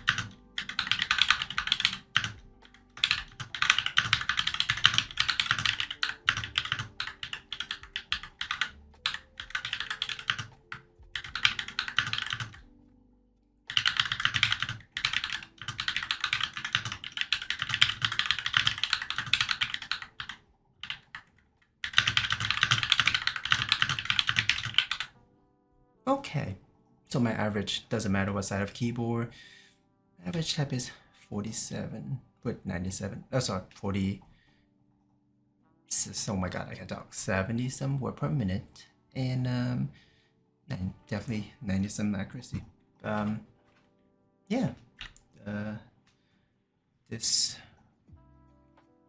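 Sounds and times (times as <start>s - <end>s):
mechanical keyboard typing: 0.0s - 12.7s, 13.7s - 25.1s.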